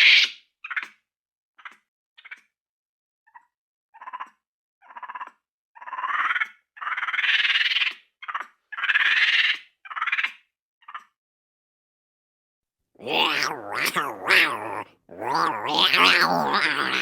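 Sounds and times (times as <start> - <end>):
raspy chirping creature calls: 13.0 - 17.0.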